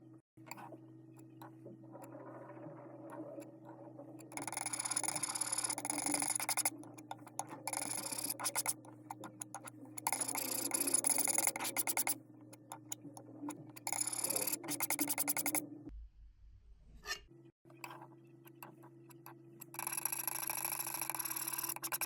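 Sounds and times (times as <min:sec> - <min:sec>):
paint being stirred: 0:01.4 - 0:15.6.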